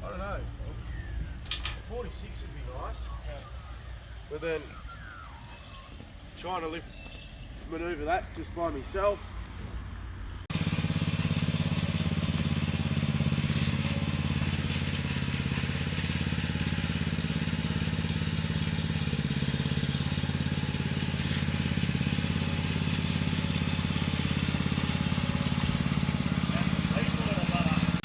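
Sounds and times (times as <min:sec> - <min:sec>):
machine engine running: 0:10.5 - 0:28.0.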